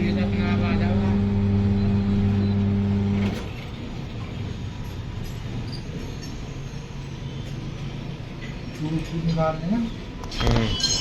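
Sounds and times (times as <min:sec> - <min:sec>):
electric motor humming: 0:00.0 - 0:03.3.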